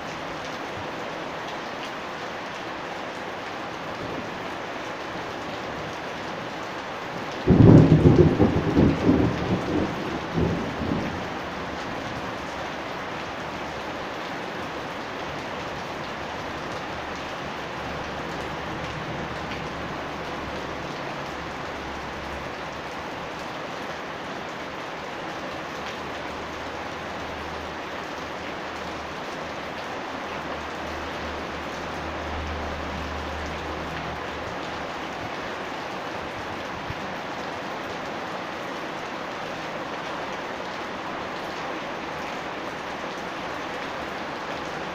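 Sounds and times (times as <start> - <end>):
steady rain falling: 0.0 - 44.9
thunderclap crackling and rumbling: 7.5 - 11.4.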